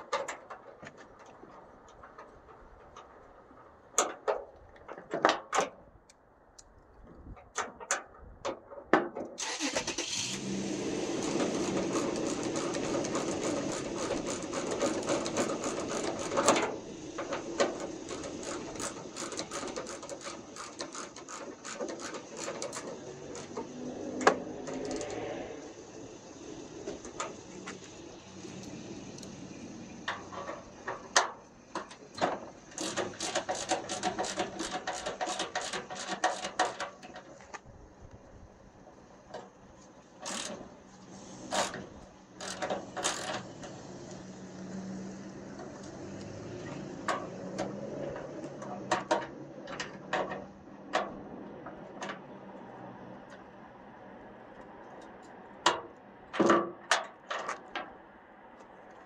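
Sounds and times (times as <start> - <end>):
hand ratchet clicking: 11.2 - 23.7, 24.3 - 25.2, 32.7 - 37.2, 40.2 - 40.6, 41.5 - 41.8, 42.4 - 43.4.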